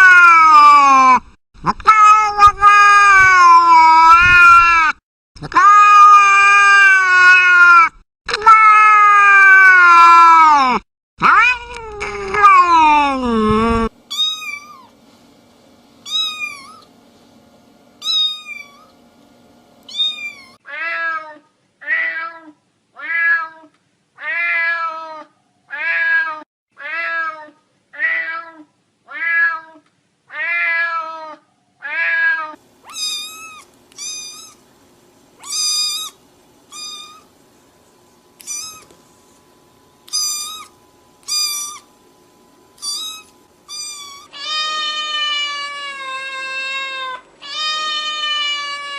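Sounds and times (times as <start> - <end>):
cat meowing: 1.8 - 4.9, 5.5 - 14.9, 16.1 - 16.9, 18.0 - 18.9, 19.9 - 34.6, 35.4 - 37.3, 38.4 - 39.0, 40.1 - 41.9, 42.8 - 48.9.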